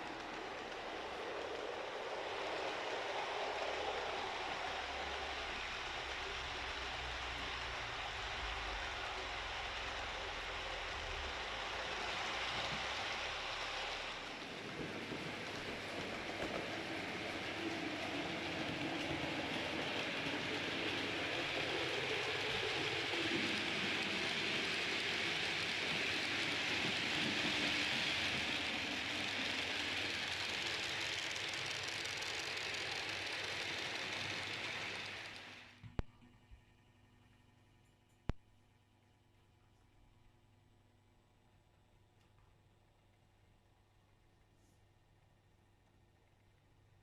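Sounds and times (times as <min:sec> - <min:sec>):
model train rattling on track: 0:00.0 - 0:35.8.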